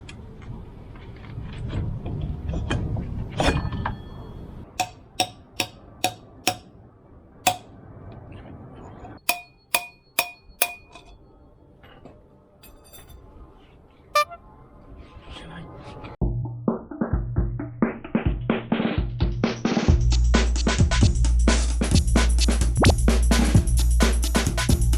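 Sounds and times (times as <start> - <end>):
sharp metallic clicking: 4.8 - 6.7.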